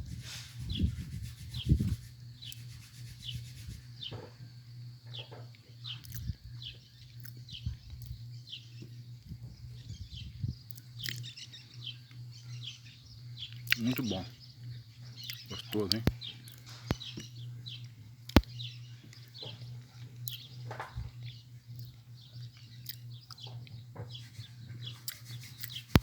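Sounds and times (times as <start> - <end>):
steady low hum: 0.0 - 26.0
bird chirping: 0.6 - 26.0.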